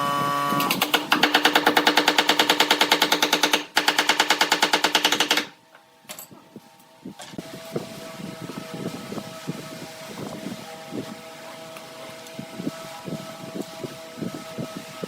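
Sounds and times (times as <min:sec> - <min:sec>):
steady machine hum: 0:00.0 - 0:15.0.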